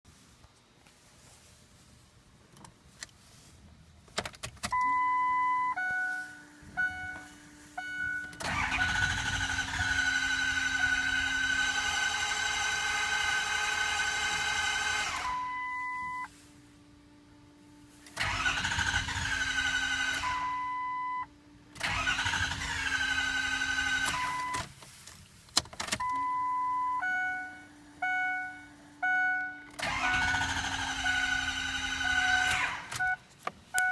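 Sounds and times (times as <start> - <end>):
short beeps: 4.7 - 9.0, 15.2 - 16.3, 20.4 - 21.3, 26.0 - 30.3, 31.0 - 33.2
steady electronic tones: 4.7 - 13.6
engine starter cranking: 8.2 - 15.4, 18.1 - 20.5, 21.8 - 24.7, 29.7 - 33.2.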